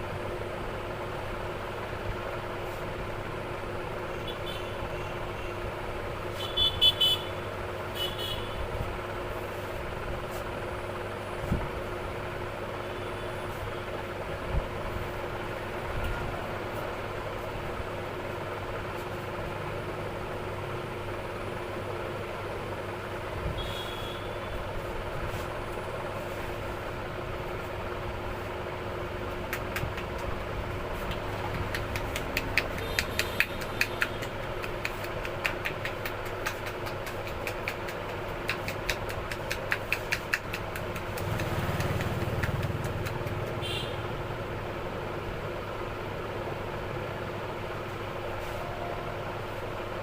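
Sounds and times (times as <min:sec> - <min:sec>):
traffic engine hum: 0:00.0 - 0:50.0
hand taps and slaps on head: 0:29.4 - 0:30.4, 0:31.0 - 0:43.6.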